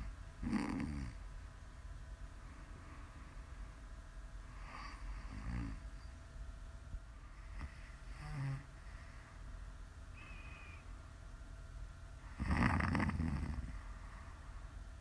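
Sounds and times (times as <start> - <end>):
woman snoring: 0.4 - 1.2, 4.6 - 5.8, 7.6 - 8.7, 12.3 - 13.8.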